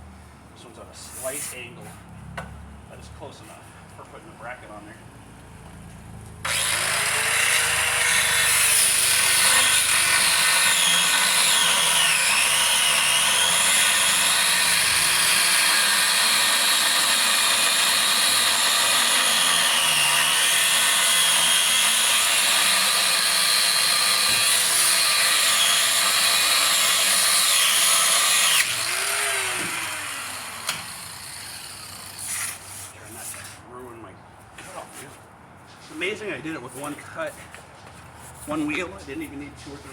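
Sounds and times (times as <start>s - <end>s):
grinder cutting steel: 6.4s - 32.7s.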